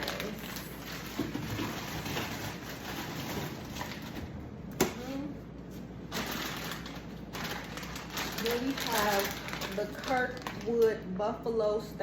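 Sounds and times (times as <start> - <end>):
plastic packaging crinkling: 0.0 - 4.3, 6.1 - 11.1.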